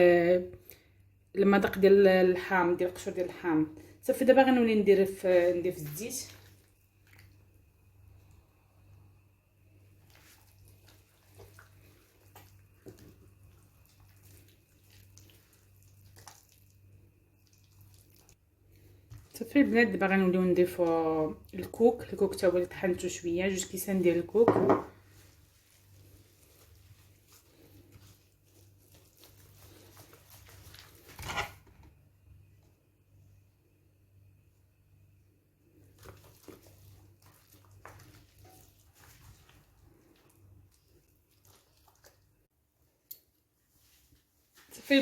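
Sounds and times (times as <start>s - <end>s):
low electrical hum: 0.0s - 45.0s
soft mixing of batter in bowl: 0.0s - 45.0s
liquid pouring and mixing: 9.8s - 19.6s, 35.6s - 42.5s.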